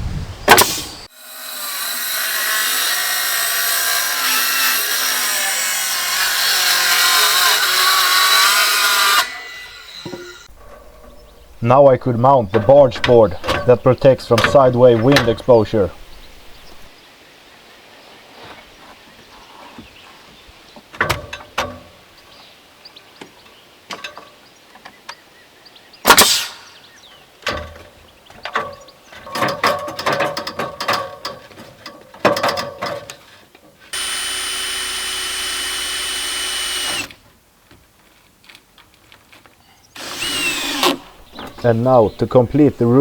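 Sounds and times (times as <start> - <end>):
knocks and clatter of wood and tools: 10.0 - 16.9, 20.8 - 22.0, 23.2 - 25.2, 27.4 - 33.9
power tool running: 34.0 - 37.2, 40.0 - 41.6.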